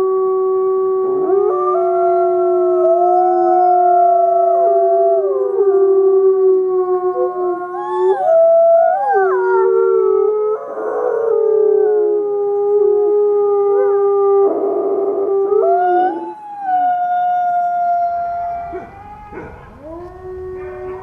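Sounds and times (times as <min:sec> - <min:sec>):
wolves howling: 0:01.0 - 0:21.0
rough noisy wolf calls: 0:17.6 - 0:21.0.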